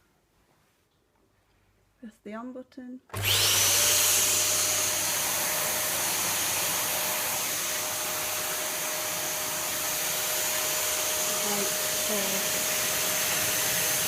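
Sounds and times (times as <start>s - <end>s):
vacuum cleaner running: 3.1s - 14.0s.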